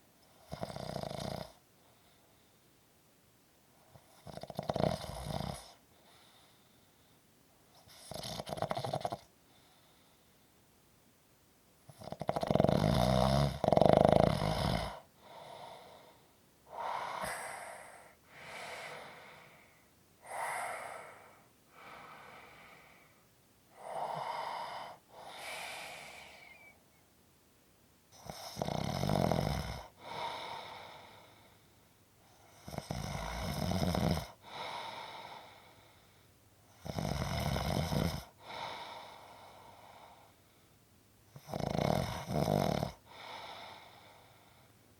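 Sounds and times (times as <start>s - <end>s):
person snoring: 4.2s - 5.8s, 11.9s - 16.0s, 16.7s - 26.8s, 28.2s - 31.3s, 32.5s - 35.6s, 36.8s - 39.3s, 41.4s - 44.1s.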